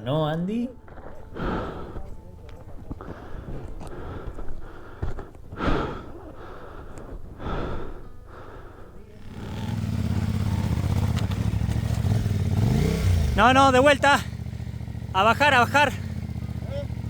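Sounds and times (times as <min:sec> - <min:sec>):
motorcycle engine droning: 0:07.6 - 0:17.0.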